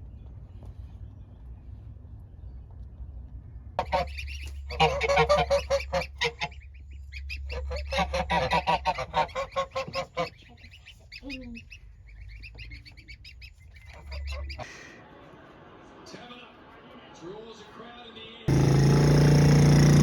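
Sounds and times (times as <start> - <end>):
geese honking: 3.8 - 14.9.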